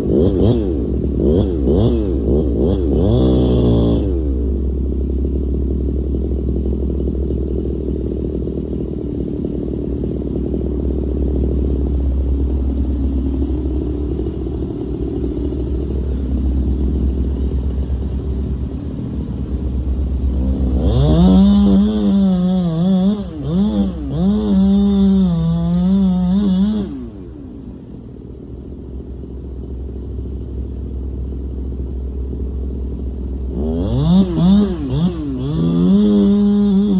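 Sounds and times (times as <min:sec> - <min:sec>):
high-pitched engine revving: 0:00.0 - 0:04.7, 0:20.1 - 0:28.0, 0:33.4 - 0:36.9
diesel engine running: 0:00.0 - 0:36.9.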